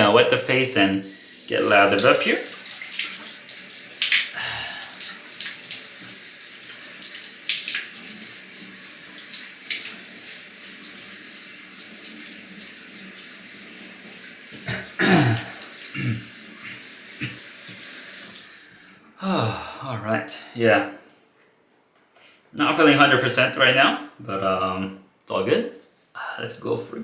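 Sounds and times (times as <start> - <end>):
tap water running into sink: 1.0 - 18.6
water splashing on face: 1.1 - 13.8, 14.4 - 18.5.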